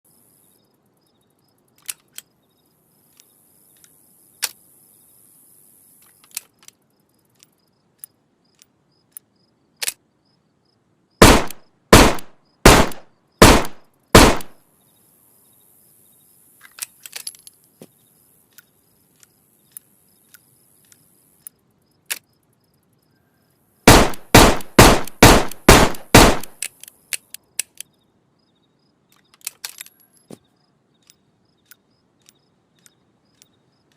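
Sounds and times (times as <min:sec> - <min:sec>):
small clicks: 0:01.6 - 0:02.4, 0:03.0 - 0:04.8, 0:05.9 - 0:10.0, 0:16.6 - 0:22.9, 0:26.3 - 0:28.0, 0:29.1 - 0:30.4, 0:31.0 - 0:33.9
revolver gunshots: 0:11.2 - 0:14.6, 0:23.9 - 0:26.6.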